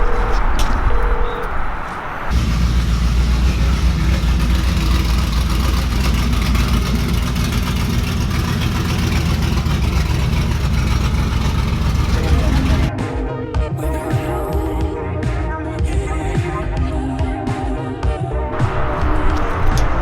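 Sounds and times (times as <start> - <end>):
vehicle engine idling: 0.0 - 12.9, 18.6 - 20.0.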